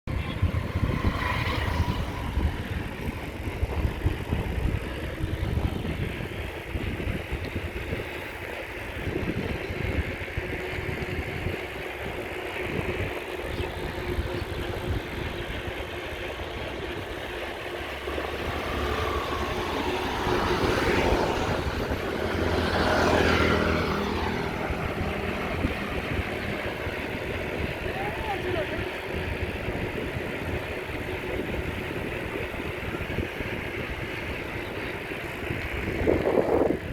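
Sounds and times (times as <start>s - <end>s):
vehicle passing loudly: 0.1s - 7.0s, 10.7s - 30.6s
road traffic: 0.1s - 36.9s
wind rumble on microphone: 0.1s - 36.9s.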